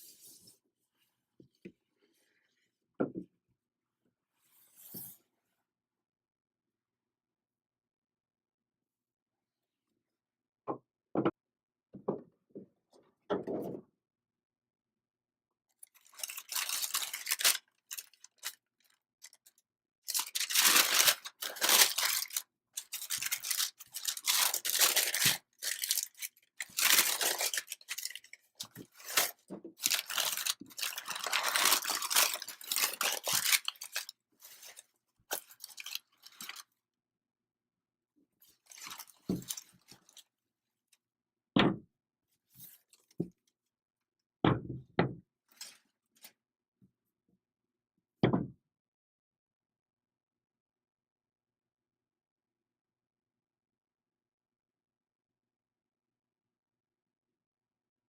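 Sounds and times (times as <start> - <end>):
paper crinkling and tearing: 15.9 - 19.5, 20.1 - 36.6, 38.6 - 40.2.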